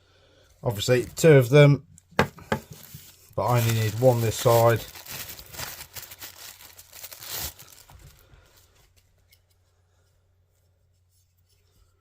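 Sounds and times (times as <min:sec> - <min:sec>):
plastic packaging rustling: 0:02.2 - 0:09.4.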